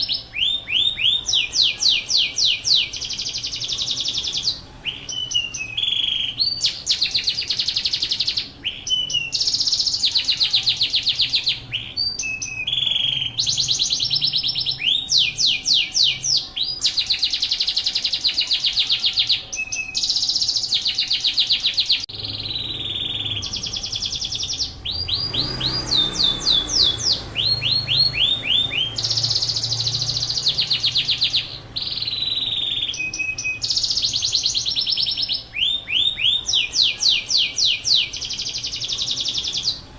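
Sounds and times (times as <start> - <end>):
canary singing: 0.0 - 39.9.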